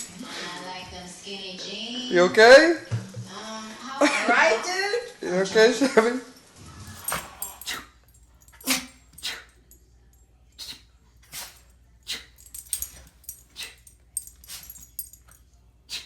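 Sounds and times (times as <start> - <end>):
dog sneezing: 6.9 - 9.6, 10.6 - 13.8.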